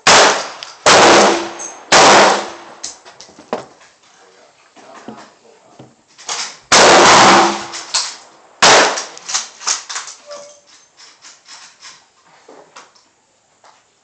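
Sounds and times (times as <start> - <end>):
rifle shots echoing: 0.0 - 2.8, 6.3 - 10.1.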